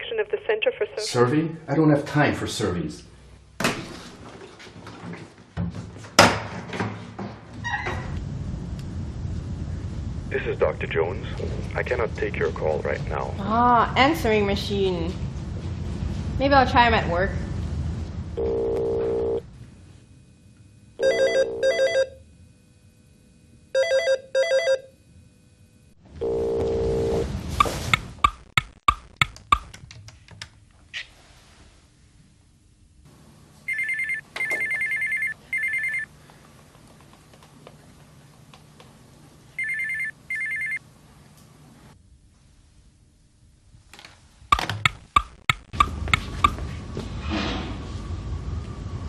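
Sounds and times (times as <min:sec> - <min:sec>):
electronic phone ringing: 0:18.4 - 0:19.4, 0:21.0 - 0:22.2, 0:23.7 - 0:25.0, 0:26.2 - 0:28.5, 0:33.6 - 0:36.1, 0:39.6 - 0:40.8
trilling phone ring: 0:21.0 - 0:22.2, 0:23.7 - 0:25.0, 0:33.7 - 0:36.1, 0:39.6 - 0:40.8
sharp clicks: 0:28.0 - 0:30.5, 0:44.5 - 0:46.6.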